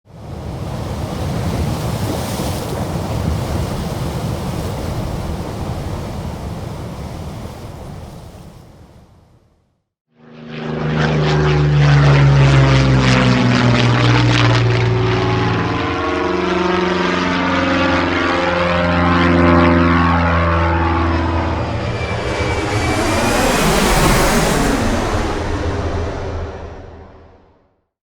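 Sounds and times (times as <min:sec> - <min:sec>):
propeller aeroplane flying past: 0:10.1 - 0:27.7.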